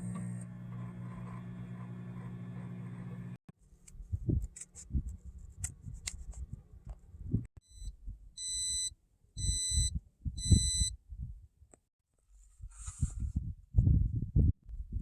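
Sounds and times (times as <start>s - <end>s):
high electronic beeps: 7.6s - 10.9s.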